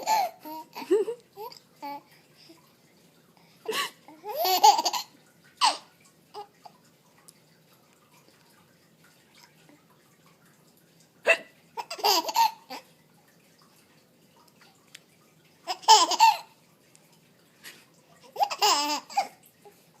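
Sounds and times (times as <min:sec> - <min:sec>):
baby laughing: 0:00.0 - 0:02.1, 0:03.7 - 0:06.5, 0:11.3 - 0:12.9, 0:15.7 - 0:16.6, 0:18.2 - 0:19.4.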